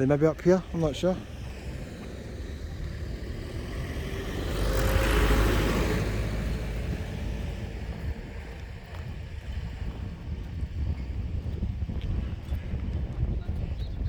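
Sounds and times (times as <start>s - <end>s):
car driving past: 0.0s - 9.4s
steady low rumble: 0.0s - 14.0s.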